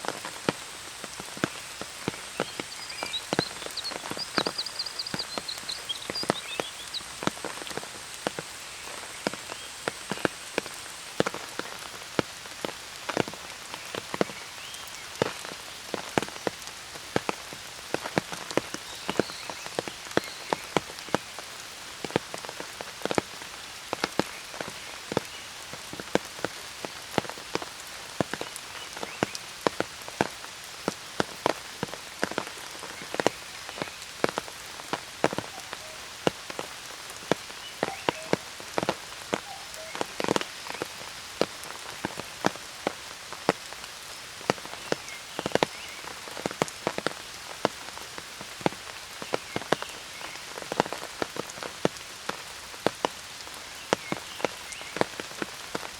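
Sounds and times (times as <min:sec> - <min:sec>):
raindrops tapping on umbrella: 0:00.0 - 0:55.9
rainfall hiss: 0:00.0 - 0:55.9.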